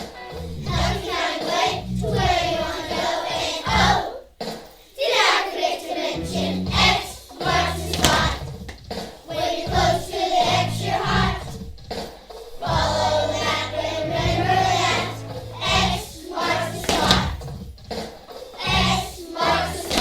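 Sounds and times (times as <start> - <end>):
children's choir singing: 0.0 - 17.5, 18.2 - 20.0
instrumental accompaniment with bass: 0.4 - 2.8, 6.2 - 8.8, 9.7 - 18.0, 18.6 - 20.0.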